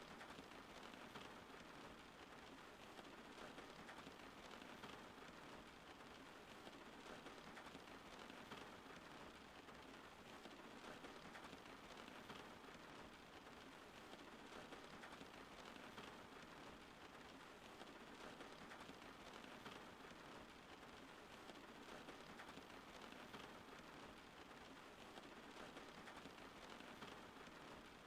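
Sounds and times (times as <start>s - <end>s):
faint steady rain: 0.0s - 28.0s.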